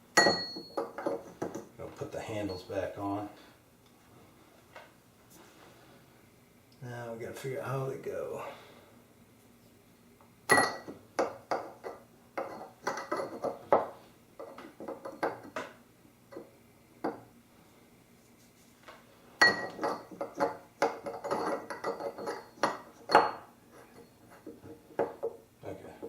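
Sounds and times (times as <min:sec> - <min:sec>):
metal faucet parts clinking: 0:19.4 - 0:24.0.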